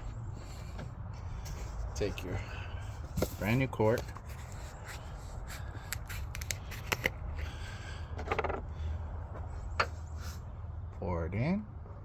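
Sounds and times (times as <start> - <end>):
plastic bottle clicking and scraping: 5.9 - 7.5.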